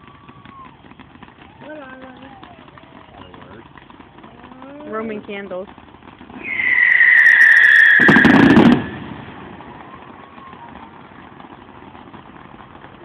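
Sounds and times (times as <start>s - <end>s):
firework crackling rush: 0.0s - 13.0s
firework whistling: 6.3s - 10.8s.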